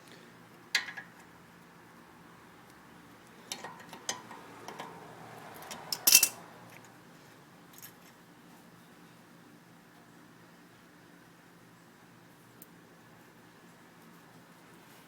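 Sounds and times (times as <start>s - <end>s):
metallic clicks and clinks: 5.6s - 6.4s.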